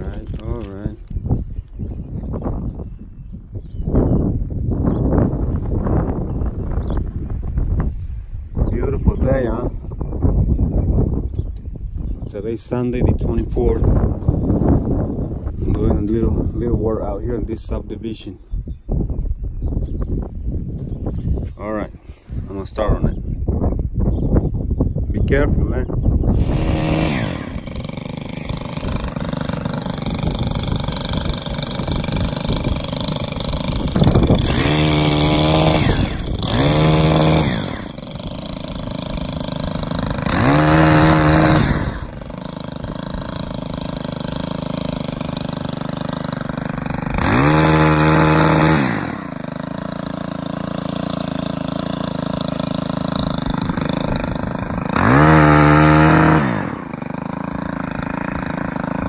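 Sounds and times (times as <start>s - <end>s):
chainsaw revving: 0.0s - 0.8s, 26.3s - 59.0s.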